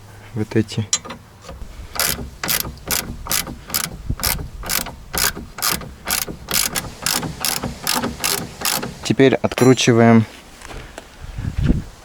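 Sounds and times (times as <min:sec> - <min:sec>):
ratchet wrench clicking: 0:01.0 - 0:09.8.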